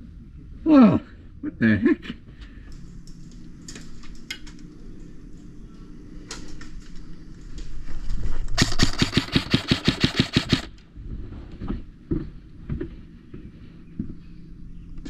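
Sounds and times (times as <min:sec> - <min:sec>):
low steady rumble: 0:00.0 - 0:15.0
airsoft gun full-auto burst: 0:08.6 - 0:10.7
gear clicking and knocking: 0:08.6 - 0:10.7.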